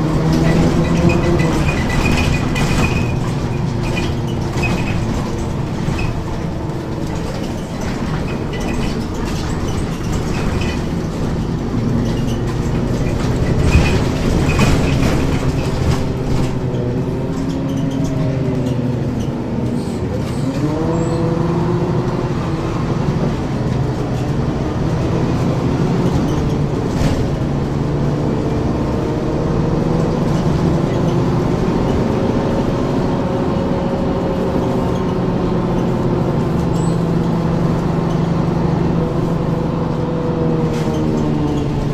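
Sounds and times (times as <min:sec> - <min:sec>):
rattles: 0:00.0 - 0:20.7
bus engine running: 0:00.0 - 0:41.9.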